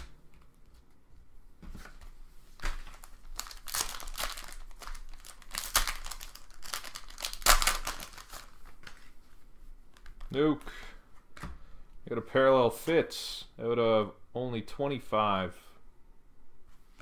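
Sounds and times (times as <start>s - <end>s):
wrappers crinkling and tearing: 2.6s - 9.2s.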